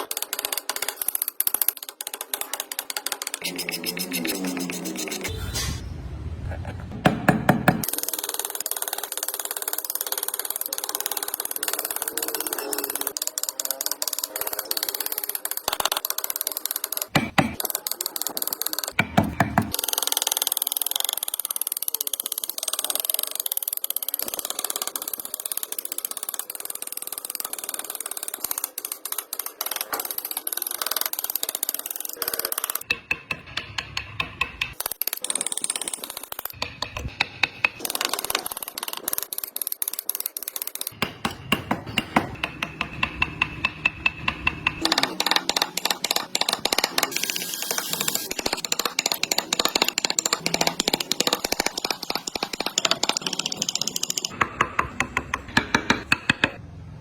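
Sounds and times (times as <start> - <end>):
carving tools scraping wood: 2.4 - 5.3.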